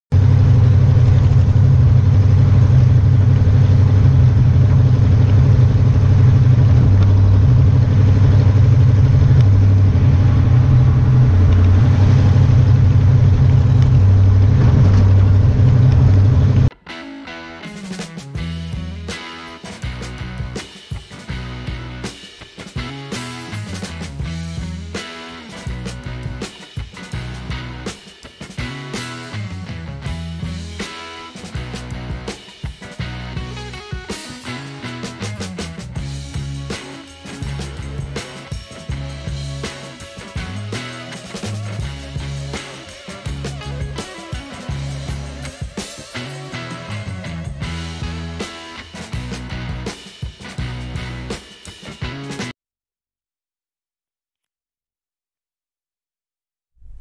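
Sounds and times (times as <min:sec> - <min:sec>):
engine running low-pitched: 0:00.1 - 0:16.7, 0:38.8 - 0:39.7, 0:40.4 - 0:44.0
rock music: 0:00.1 - 0:52.5.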